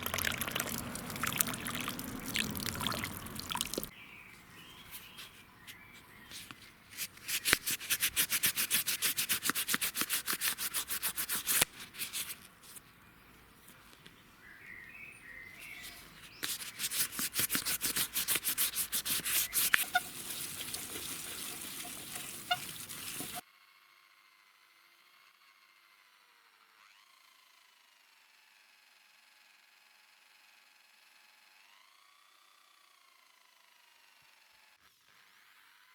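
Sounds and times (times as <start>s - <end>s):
hand scraping a cup: 4.8s - 12.8s, 15.5s - 23.4s.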